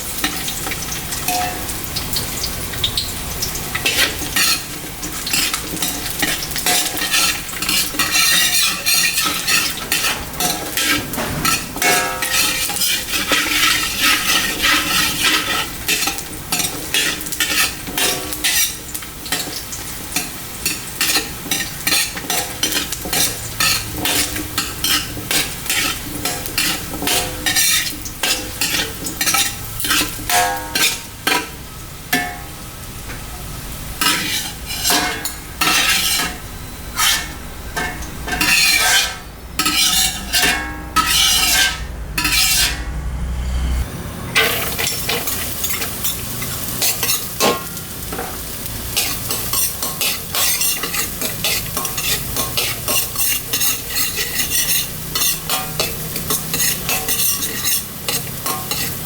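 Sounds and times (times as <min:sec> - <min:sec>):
food sizzling: 0:00.0 - 0:59.0
metal spatula scraping wok: 0:02.9 - 0:32.4, 0:34.0 - 0:59.0
low hum: 0:40.6 - 0:44.4.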